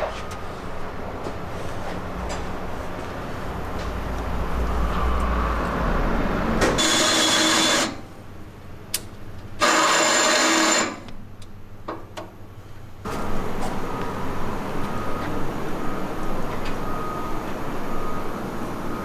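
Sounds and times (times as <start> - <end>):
electric drill boring steel: 6.8 - 8.0, 9.6 - 11.1.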